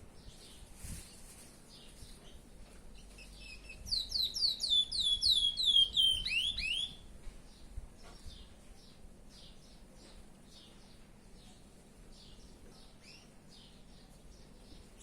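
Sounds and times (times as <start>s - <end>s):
bird whistling song: 3.0s - 7.1s.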